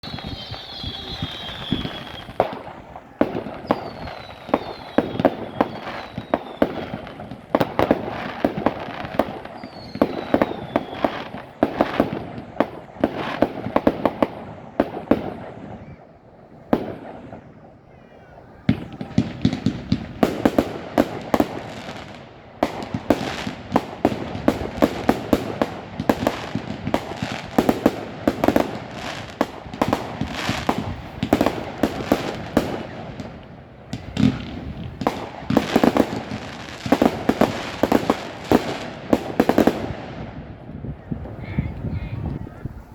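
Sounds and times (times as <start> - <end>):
fireworks cracks and bangs: 0.0 - 16.0, 16.6 - 17.8, 18.7 - 41.3
falling firework whistles: 0.0 - 17.6.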